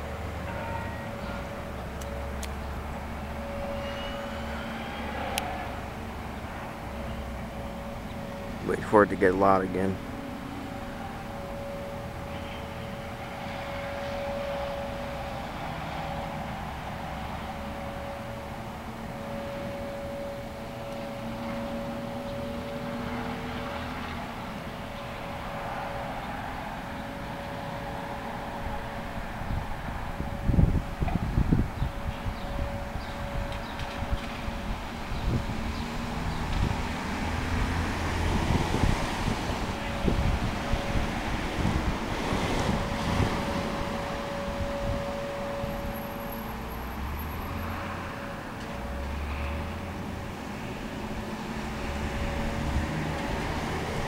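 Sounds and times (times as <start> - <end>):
low droning hum: 0.0 - 54.0
faint higher tone: 0.5 - 24.2.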